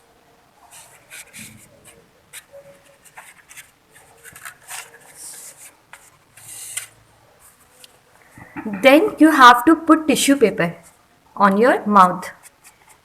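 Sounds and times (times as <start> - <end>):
thread rustling on paper: 0.6 - 9.5
glue stick rubbing on paper: 0.7 - 8.0.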